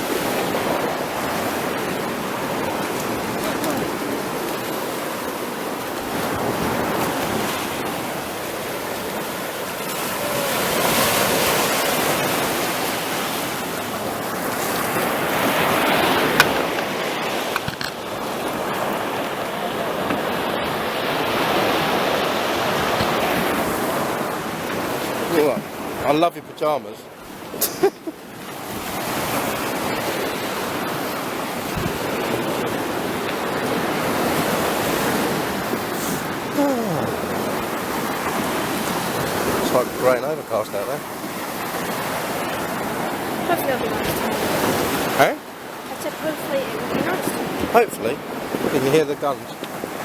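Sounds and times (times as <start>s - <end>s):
sea waves washing onto shore: 0.0s - 50.0s.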